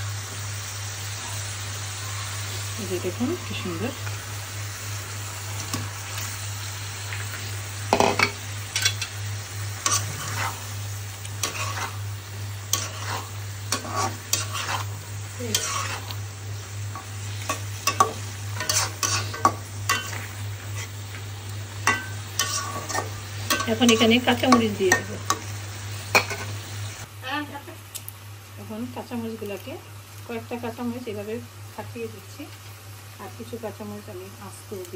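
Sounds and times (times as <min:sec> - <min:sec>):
gravy sizzling: 0:00.0 - 0:34.9
utensil scraping a frying pan: 0:07.9 - 0:26.6.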